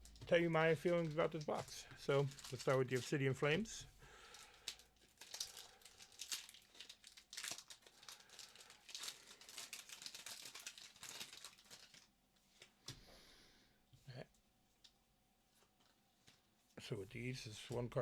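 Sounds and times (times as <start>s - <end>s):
foil pack crinkling: 0.0s - 3.4s, 4.2s - 12.7s.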